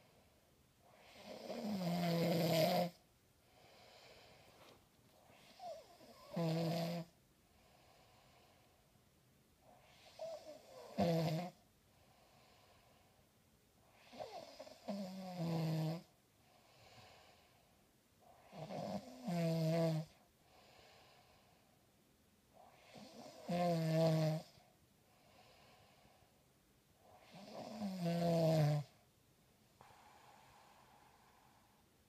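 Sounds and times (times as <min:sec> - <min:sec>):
person snoring: 0:00.9 - 0:03.0, 0:05.3 - 0:07.1, 0:09.8 - 0:11.6, 0:18.4 - 0:20.2, 0:22.7 - 0:24.6, 0:27.2 - 0:29.0
quiet breaths out: 0:03.0 - 0:06.4, 0:16.3 - 0:18.6, 0:20.1 - 0:21.9, 0:24.5 - 0:27.7, 0:29.8 - 0:32.0.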